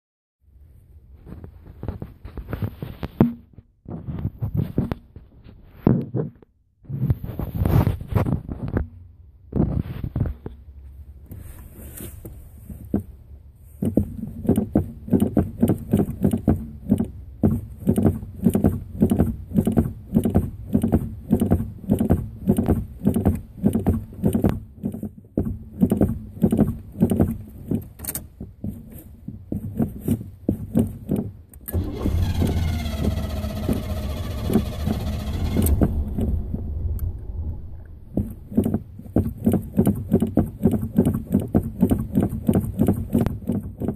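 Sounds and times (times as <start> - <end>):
car engine cranking: 13.8 - 28.4, 30.7 - 43.9
car engine running: 31.7 - 43.9.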